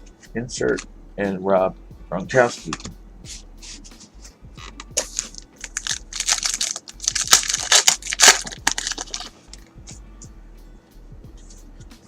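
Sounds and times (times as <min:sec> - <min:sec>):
cards clicking and sliding: 0:02.5 - 0:02.9, 0:04.7 - 0:09.6
foil wrapper crinkling and tearing: 0:05.0 - 0:09.4.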